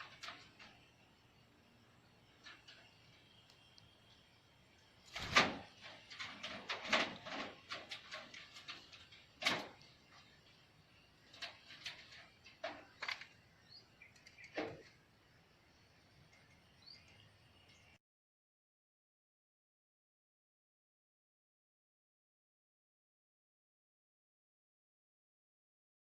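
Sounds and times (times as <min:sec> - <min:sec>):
sharp knocks and clatters: 0:00.0 - 0:01.0, 0:05.2 - 0:10.4, 0:11.0 - 0:13.4.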